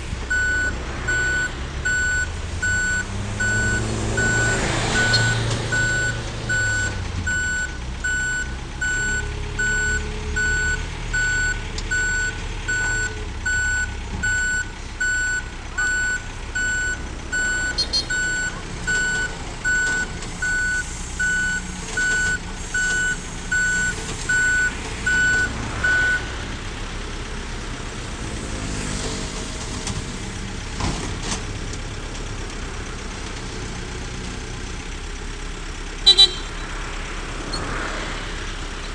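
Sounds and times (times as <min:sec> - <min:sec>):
diesel engine rumble: 0:00.0 - 0:38.9
truck reversing alarm beeping: 0:00.3 - 0:26.3, 0:36.0 - 0:36.7.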